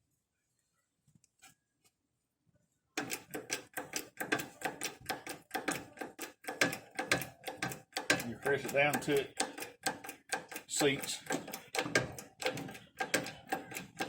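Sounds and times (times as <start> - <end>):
sharp metallic taps: 3.0 - 14.0.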